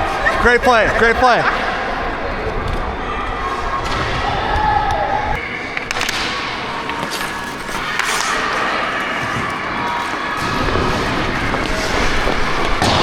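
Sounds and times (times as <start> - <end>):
skate blades scraping ice: 5.4 - 13.0.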